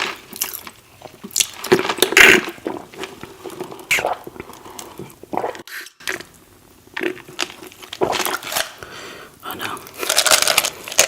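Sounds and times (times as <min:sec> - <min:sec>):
biting and crunching food: 0:00.0 - 0:08.8, 0:09.6 - 0:11.0
packaging crinkling: 0:07.1 - 0:08.8, 0:09.5 - 0:11.0.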